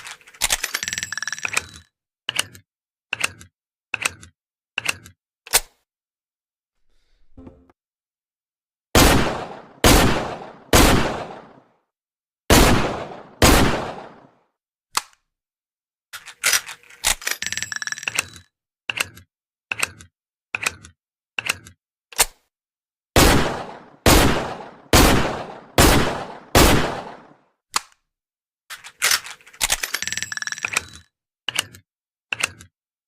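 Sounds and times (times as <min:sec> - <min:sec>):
metallic clicks and clinks: 0:00.0 - 0:02.6, 0:16.2 - 0:21.8, 0:28.7 - 0:32.7
revolver being handled clicks: 0:28.7 - 0:32.7.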